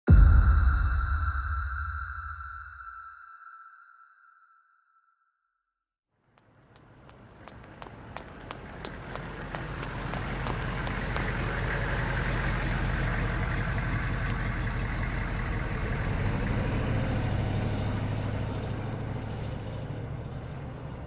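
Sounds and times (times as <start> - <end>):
vehicle engine hum passing: 6.2 - 21.0.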